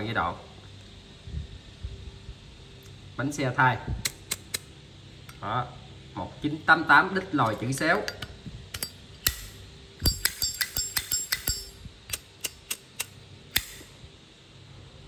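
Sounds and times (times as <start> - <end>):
metal lighter clicking and clinking: 7.5 - 13.9.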